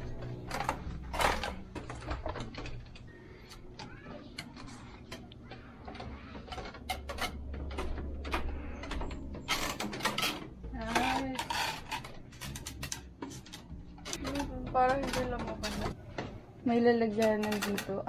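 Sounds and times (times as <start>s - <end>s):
handling clicks and knocks: 0.0s - 16.4s, 17.0s - 18.0s
low rumble: 6.9s - 11.2s.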